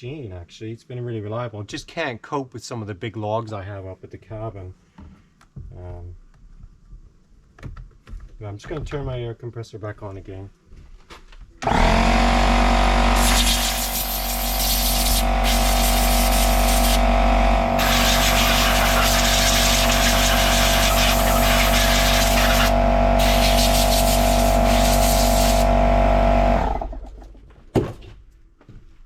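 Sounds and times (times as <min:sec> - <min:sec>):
air compressor humming: 0:11.6 - 0:27.2
air blow gun hissing: 0:13.1 - 0:25.8.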